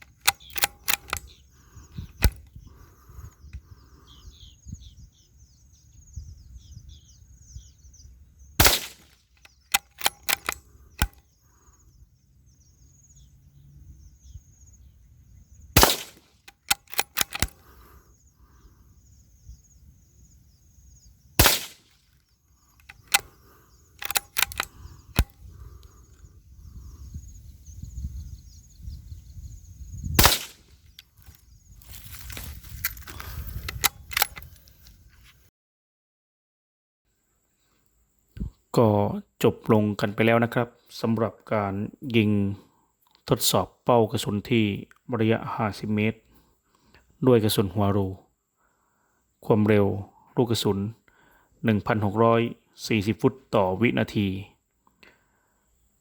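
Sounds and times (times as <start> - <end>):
rifle bolt clicks and knocks: 0.0 - 2.6, 8.6 - 11.2, 15.8 - 17.9, 21.4 - 21.9, 22.8 - 23.4, 24.0 - 26.0, 30.2 - 34.8
birds chirping: 0.0 - 33.7
rifle shots: 0.1 - 1.2, 8.6 - 11.2, 15.8 - 17.6, 21.4 - 21.9, 24.0 - 25.3, 30.2 - 30.7.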